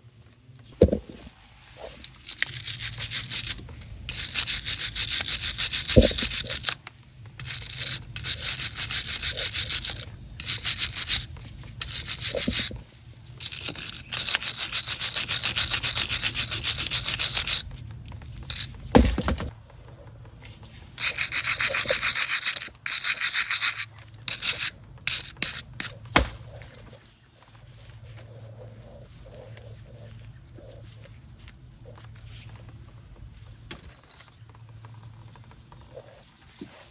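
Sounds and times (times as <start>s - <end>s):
hand tool rasping on metal: 2.1s - 6.8s, 7.4s - 12.8s, 13.4s - 17.6s, 18.5s - 19.5s, 21.0s - 26.0s.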